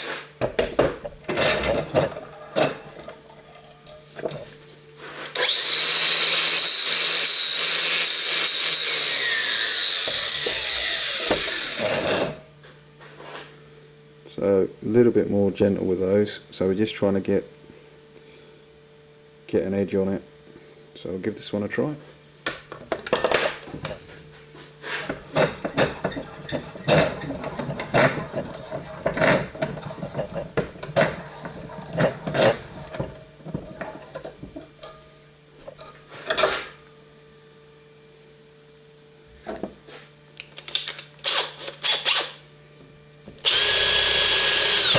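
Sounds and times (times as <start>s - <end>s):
angle grinder grinding steel: 5.1s - 12.4s, 24.8s - 34.2s, 43.4s - 44.9s.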